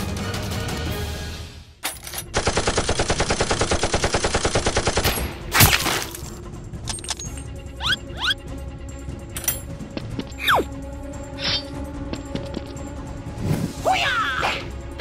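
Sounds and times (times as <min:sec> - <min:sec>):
background music: 0:00.0 - 0:15.0
rapid automatic gunfire: 0:02.3 - 0:05.1.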